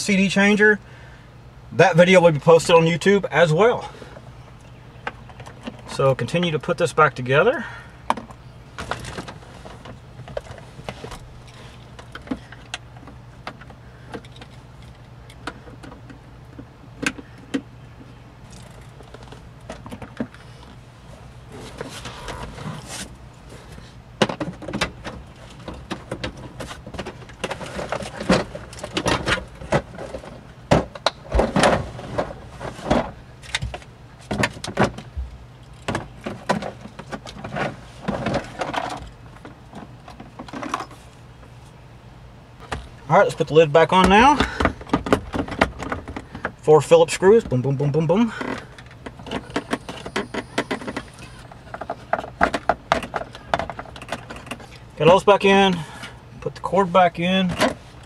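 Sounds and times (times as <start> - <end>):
faint steady hum: 0.0 - 58.0
plastic parts clicking and rattling: 48.4 - 54.9.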